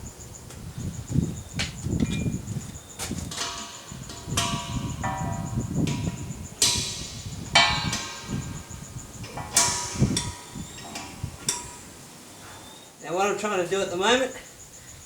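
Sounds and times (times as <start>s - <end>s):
metal parts clanking: 3.0s - 11.9s.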